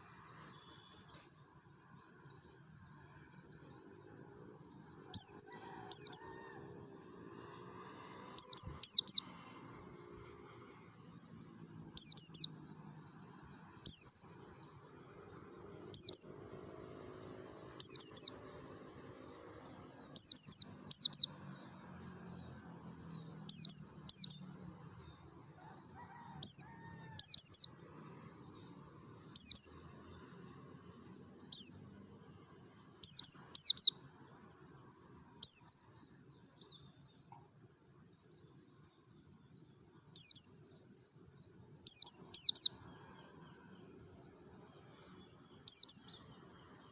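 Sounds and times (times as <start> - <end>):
bird chirping high: 5.1 - 6.3, 8.4 - 9.2, 12.0 - 12.5, 13.8 - 14.3, 15.9 - 16.3, 17.8 - 18.4, 20.2 - 21.3, 23.5 - 24.5, 26.4 - 27.7, 29.3 - 29.8, 31.5 - 31.8, 33.0 - 34.0, 35.4 - 35.9, 40.1 - 40.5, 41.8 - 42.8, 45.6 - 46.2.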